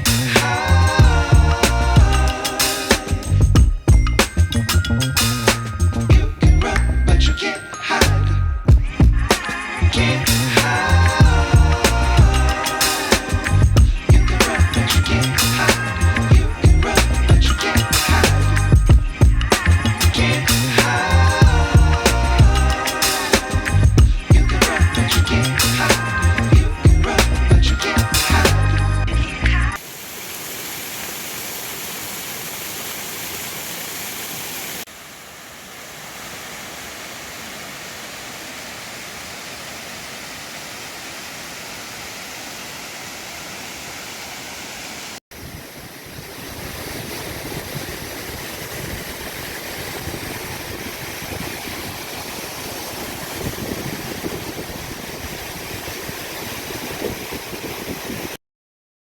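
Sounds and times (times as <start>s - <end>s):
waterfall rushing: 0.0s - 4.4s, 9.3s - 18.8s, 19.6s - 23.7s, 29.8s - 58.4s.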